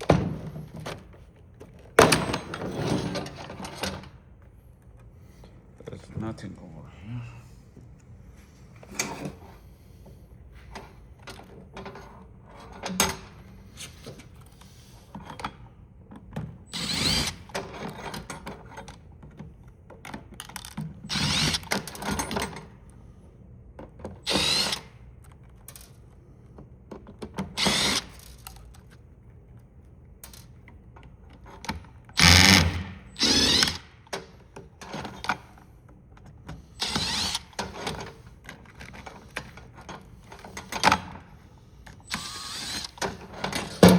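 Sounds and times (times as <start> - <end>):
power screwdriver running: 16.7 - 17.5, 21.1 - 22.0, 24.3 - 24.9, 27.6 - 28.3, 32.2 - 34.0, 36.8 - 37.8, 42.0 - 43.9.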